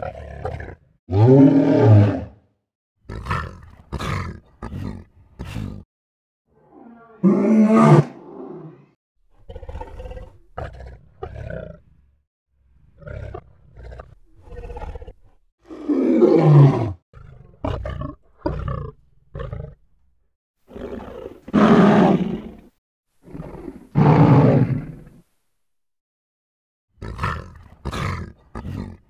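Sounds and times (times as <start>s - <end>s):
lion grunting and roaring: 0.0s - 2.4s, 3.1s - 5.8s, 6.6s - 11.8s, 12.9s - 19.8s, 27.0s - 29.0s.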